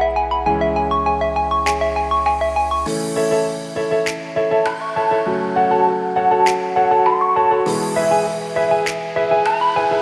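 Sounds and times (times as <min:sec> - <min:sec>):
bright plucked melody with bass: 0:00.0 - 0:02.8.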